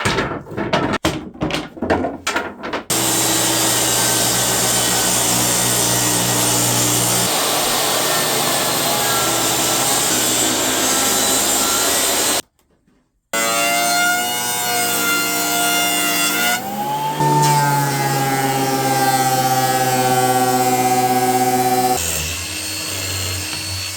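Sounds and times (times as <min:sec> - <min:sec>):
machine whining: 0:02.9 - 0:12.4, 0:16.6 - 0:22.0
power tool cutting wood: 0:02.9 - 0:12.4, 0:13.4 - 0:23.9
sawing or rasping strokes: 0:02.9 - 0:12.4, 0:13.4 - 0:23.9.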